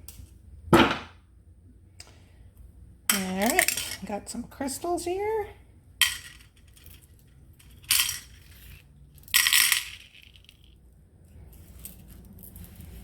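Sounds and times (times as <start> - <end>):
beads clattering into a cup: 3.1 - 4.1, 6.0 - 10.8.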